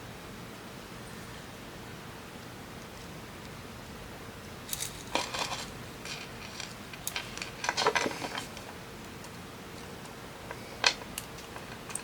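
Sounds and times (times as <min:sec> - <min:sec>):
small metal parts clinking: 0:04.7 - 0:08.6.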